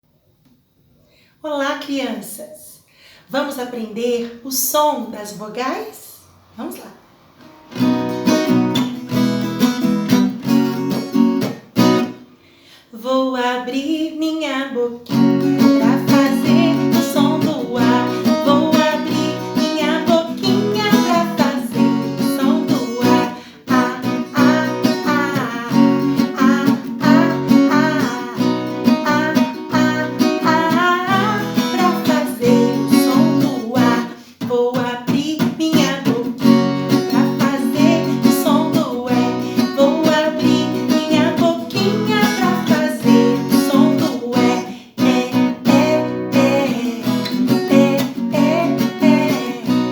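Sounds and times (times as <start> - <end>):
strummed acoustic guitar: 7.4 - 12.4, 15.0 - 49.9
person singing: 13.0 - 49.9.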